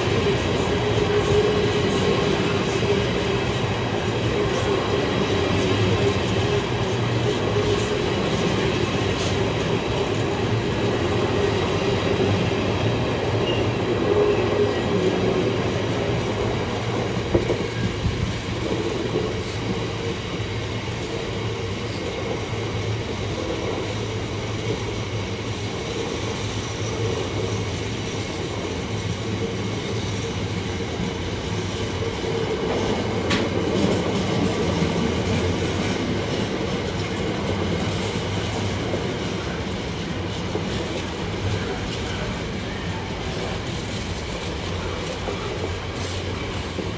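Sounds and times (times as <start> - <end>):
freight train rumbling by: 0.0 - 46.9
wheels clacking over track: 29.4 - 46.9.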